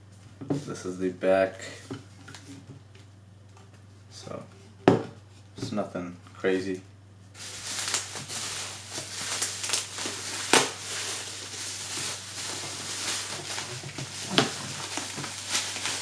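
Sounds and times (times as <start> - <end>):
plastic packaging crinkling: 7.4 - 16.0.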